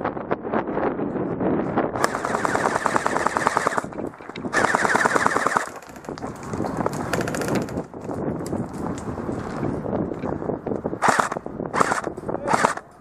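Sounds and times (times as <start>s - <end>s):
airsoft rifle full-auto bursts: 2.0s - 3.9s, 4.5s - 6.1s, 7.1s - 7.8s, 11.0s - 12.8s.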